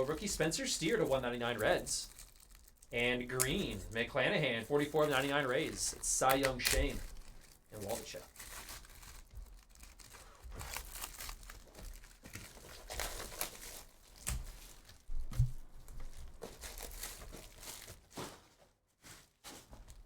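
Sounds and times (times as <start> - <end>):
foil wrappers crinkling: 0.0 - 20.0.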